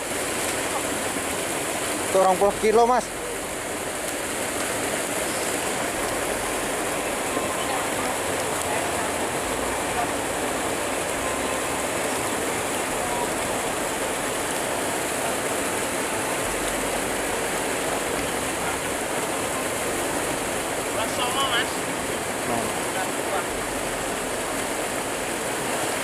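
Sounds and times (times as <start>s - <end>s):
river water rushing: 0.0s - 26.0s.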